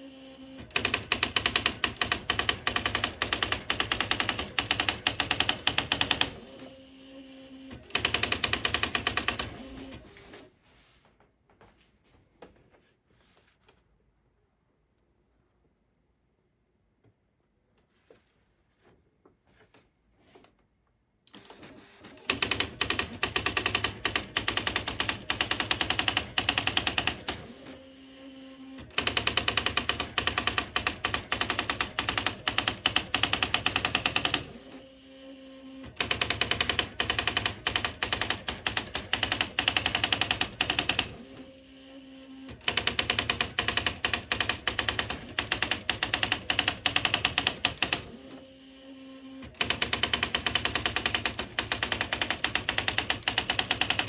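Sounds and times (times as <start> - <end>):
typewriter typing: 0.6 - 6.7, 7.7 - 10.4, 21.4 - 27.7, 28.9 - 34.7, 35.9 - 41.4, 42.6 - 48.3, 49.6 - 54.0.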